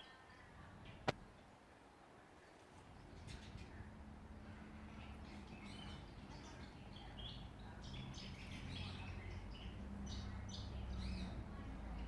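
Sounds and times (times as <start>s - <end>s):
small songbirds chirping: 2.4s - 12.0s.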